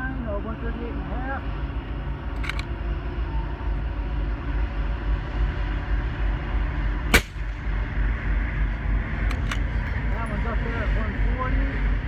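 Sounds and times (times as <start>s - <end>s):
suppressed rifle shot: 7.1s - 7.7s, 9.3s - 9.6s.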